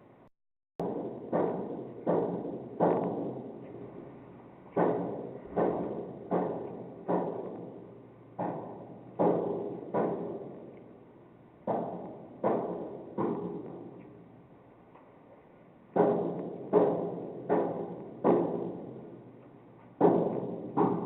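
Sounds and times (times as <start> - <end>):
loud banging on pipes: 0.8 - 3.8, 4.7 - 10.7, 11.6 - 14.0, 15.9 - 19.3, 20.0 - 21.0.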